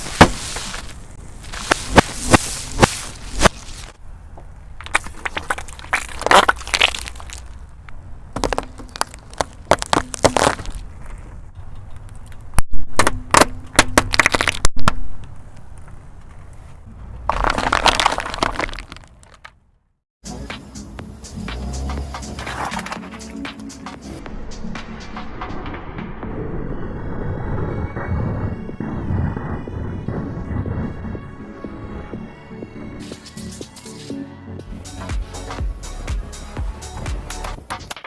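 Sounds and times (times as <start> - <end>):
tyre crushing brittle objects: 0.0 - 4.0, 4.8 - 7.6, 8.4 - 11.4, 12.2 - 15.0, 17.3 - 19.6
car rumbling: 20.6 - 23.4.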